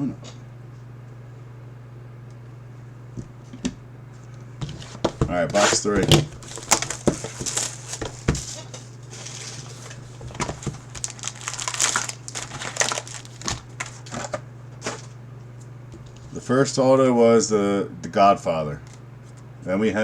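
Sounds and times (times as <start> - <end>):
plastic wrap crinkling and tearing: 5.6 - 15.1.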